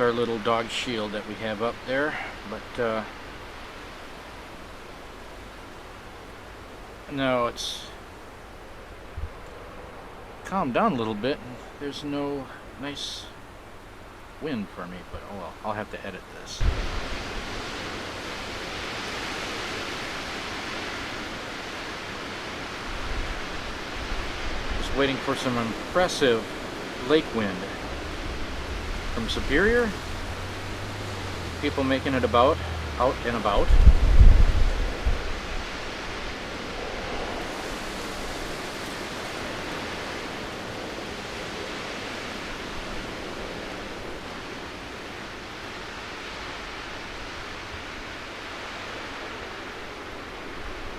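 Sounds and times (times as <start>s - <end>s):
wind gusts buffeting microphone: 0.0s - 11.9s, 16.6s - 50.9s
wind rushing: 16.6s - 21.4s, 33.5s - 39.7s.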